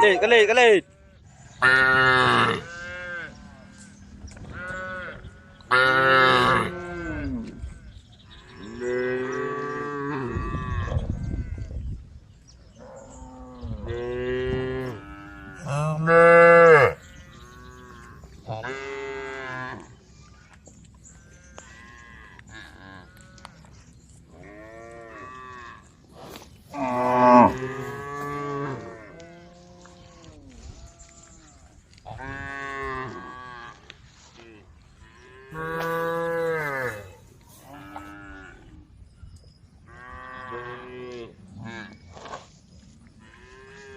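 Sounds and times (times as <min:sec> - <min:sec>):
cows mooing: 0:01.6 - 0:03.5, 0:04.5 - 0:07.6, 0:12.8 - 0:19.9, 0:26.7 - 0:30.3, 0:35.1 - 0:38.6.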